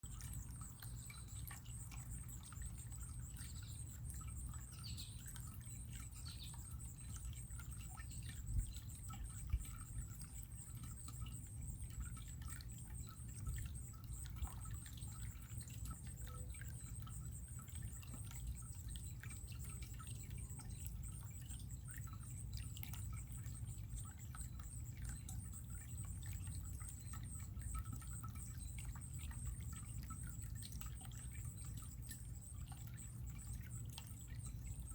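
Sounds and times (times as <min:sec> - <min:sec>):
high-pitched pulsing hum: 0:00.0 - 0:34.9
water trickling: 0:00.0 - 0:34.9
birds chirping: 0:00.1 - 0:11.4.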